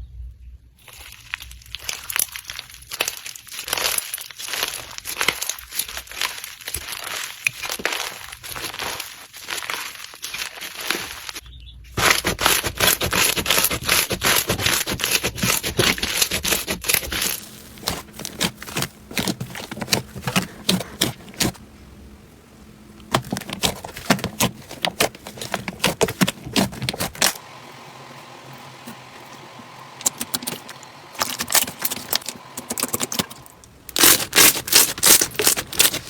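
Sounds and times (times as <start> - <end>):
crunchy slime crackling clicks: 30.0 - 36.0.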